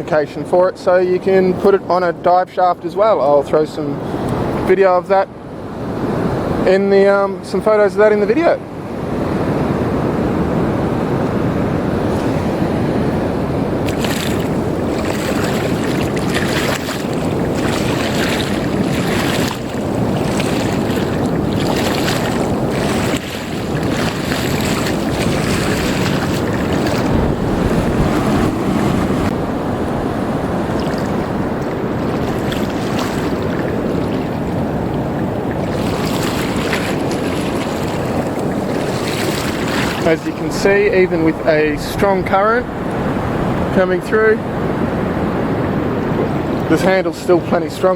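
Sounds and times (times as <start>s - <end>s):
surf and rushing water: 0.0s - 47.9s
wind buffeting the microphone: 3.8s - 47.9s.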